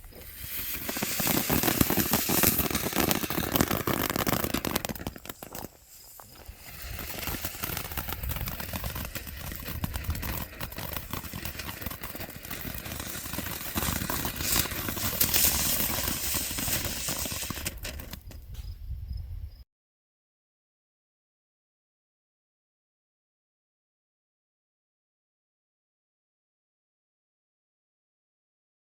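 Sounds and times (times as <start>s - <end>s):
firework fountain hissing and crackling: 0.0s - 18.4s.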